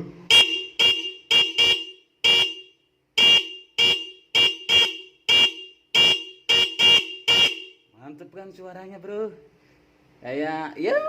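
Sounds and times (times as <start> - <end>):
dual-tone motorcycle horn honks: 0.3 - 7.9.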